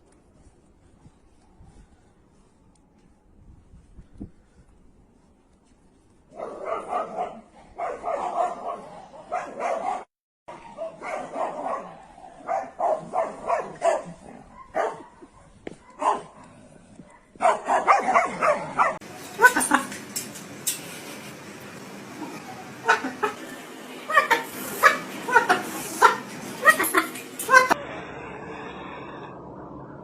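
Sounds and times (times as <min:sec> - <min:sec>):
dog barking: 0:06.3 - 0:16.5, 0:17.1 - 0:19.5.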